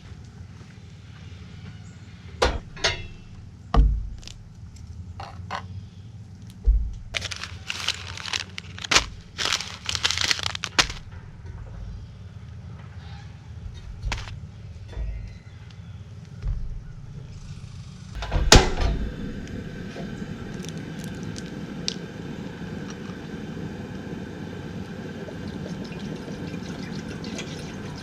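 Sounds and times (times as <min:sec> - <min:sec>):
handling knocks and thuds: 0:02.4 - 0:04.5, 0:06.6 - 0:12.0, 0:16.4 - 0:17.2
crackling rustle: 0:06.3 - 0:13.0, 0:19.4 - 0:24.1.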